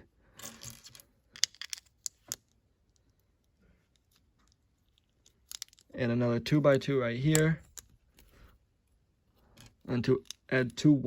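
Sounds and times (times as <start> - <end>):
plastic bricks clicking: 0.4 - 2.6, 4.0 - 5.9.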